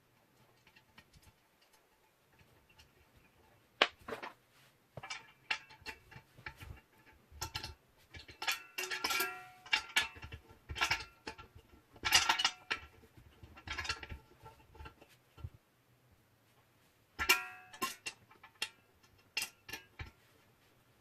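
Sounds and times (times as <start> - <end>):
metal parts clanking: 5.0 - 11.4.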